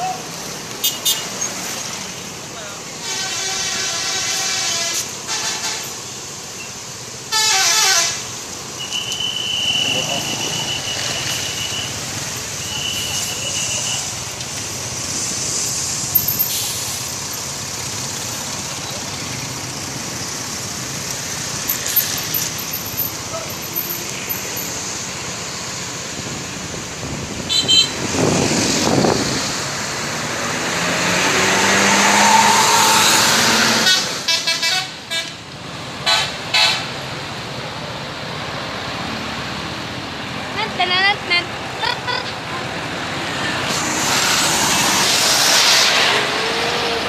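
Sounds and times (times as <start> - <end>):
buses passing: 0.0 - 47.0
road traffic: 0.0 - 47.0
multi-note bus horn: 3.0 - 5.9, 7.3 - 8.2, 27.5 - 28.0, 33.7 - 35.4.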